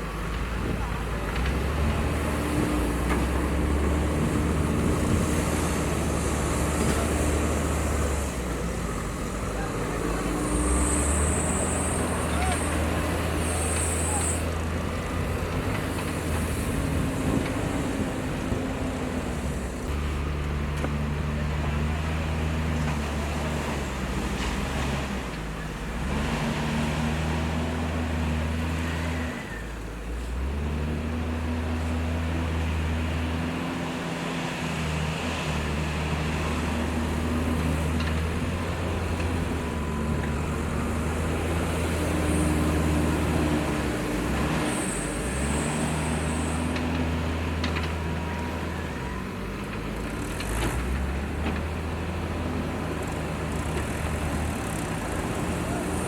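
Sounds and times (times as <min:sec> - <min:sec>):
heavy diesel engine working: 0:00.0 - 0:56.0
high squeal: 0:10.2 - 0:14.5.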